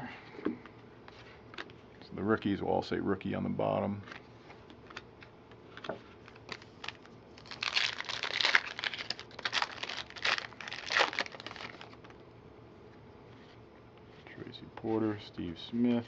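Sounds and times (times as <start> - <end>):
wrapper crinkling and rustling: 5.7 - 12.2.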